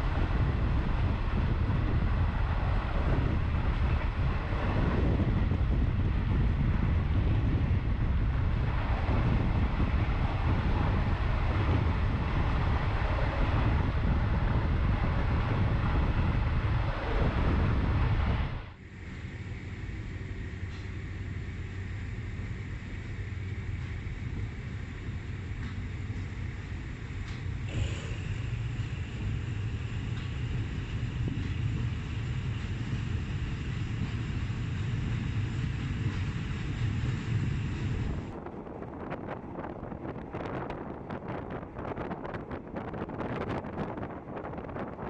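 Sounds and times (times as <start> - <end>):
steady hum: 0.0 - 45.0
train rumbling: 0.0 - 45.0
wind buffeting microphone: 0.0 - 45.0.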